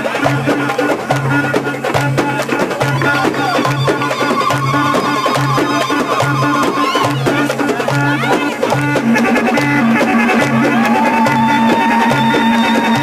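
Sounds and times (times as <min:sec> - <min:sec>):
fast drum: 0:00.0 - 0:13.0.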